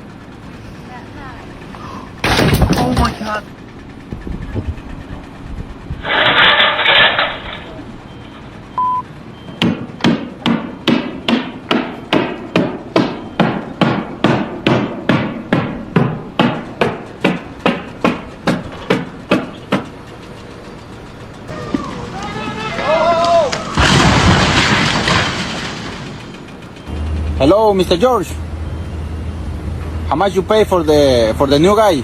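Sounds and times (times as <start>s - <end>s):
loud burst of noise: 5.8s - 9.9s, 20.1s - 27.4s
short beep: 8.1s - 9.6s
hammer blows: 9.4s - 27.7s.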